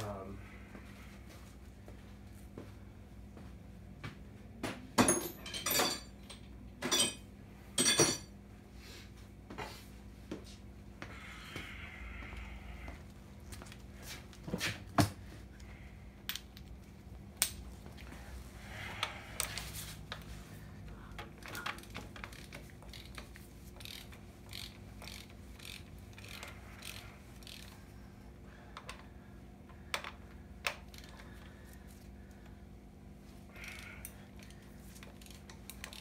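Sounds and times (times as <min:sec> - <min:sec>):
metal clinks and knocks: 0:05.0 - 0:08.3
socket wrench ratchet clicks: 0:23.8 - 0:27.8.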